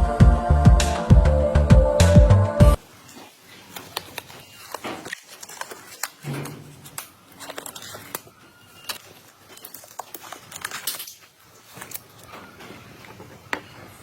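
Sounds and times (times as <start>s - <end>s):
clicks and crinkling: 3.0s - 14.0s.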